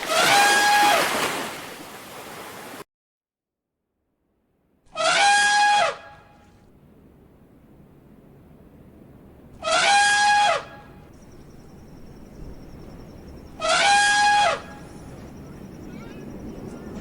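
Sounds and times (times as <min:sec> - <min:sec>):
elephant trumpeting: 0:00.0 - 0:01.2, 0:04.9 - 0:06.3, 0:09.6 - 0:10.9, 0:13.6 - 0:15.0
faint high-pitched whine: 0:10.7 - 0:17.0.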